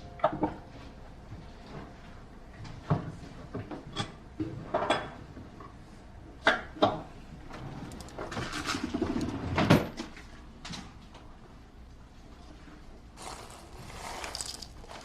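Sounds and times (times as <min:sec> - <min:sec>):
objects knocking and clicking: 0:13.2 - 0:15.0.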